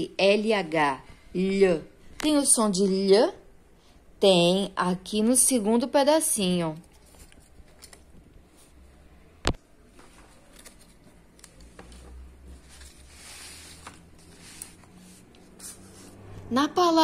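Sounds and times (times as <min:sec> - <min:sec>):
faint handling sounds: 0:06.8 - 0:16.3.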